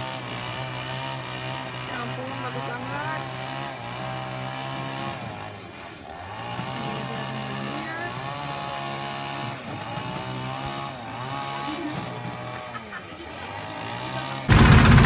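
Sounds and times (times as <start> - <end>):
engine running with low drone: 14.2 - 15.0.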